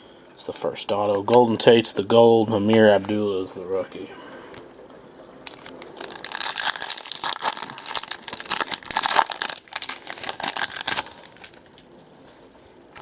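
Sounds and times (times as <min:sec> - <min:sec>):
wrapper tearing and crinkling: 0:05.5 - 0:11.6.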